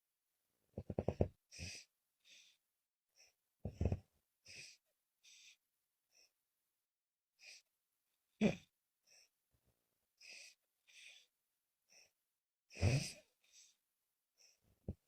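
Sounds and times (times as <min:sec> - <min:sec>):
snoring breaths: 0:00.8 - 0:02.6, 0:12.0 - 0:13.8.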